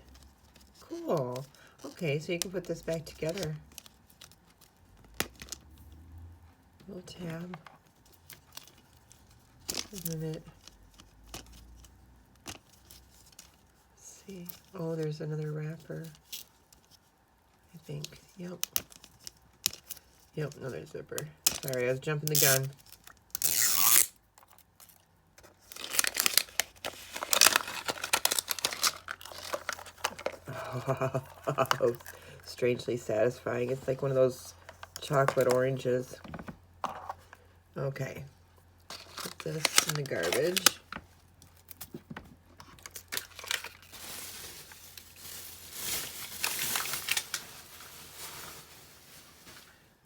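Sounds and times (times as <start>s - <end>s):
plastic wrapper crinkling and tearing: 0.0s - 5.7s, 21.4s - 32.6s, 34.6s - 35.8s, 38.8s - 42.0s, 42.6s - 50.0s.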